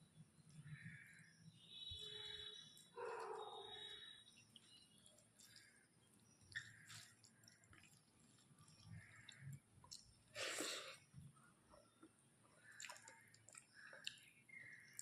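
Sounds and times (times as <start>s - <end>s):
person chewing food: 4.5s - 11.0s, 12.0s - 15.0s.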